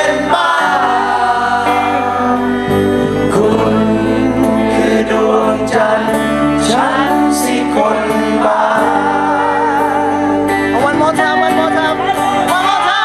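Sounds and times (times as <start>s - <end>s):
bass notes: 0.0s - 8.8s
person singing with vibrato: 0.0s - 10.6s
guitar: 0.0s - 13.0s.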